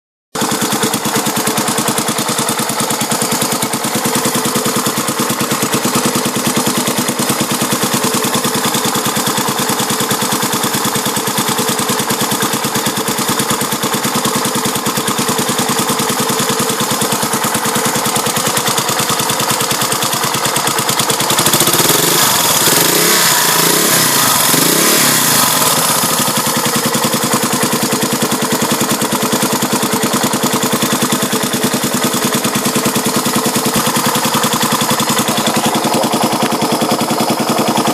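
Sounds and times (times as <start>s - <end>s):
motorcycle engine idling with clacking: 0.4s - 37.9s
engine revving blips: 21.6s - 25.9s.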